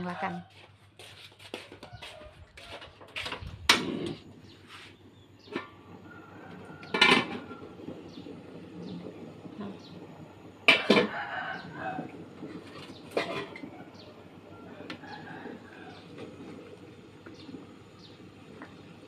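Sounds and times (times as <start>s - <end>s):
dishes and utensils clattering: 6.9s - 7.5s, 13.1s - 13.6s.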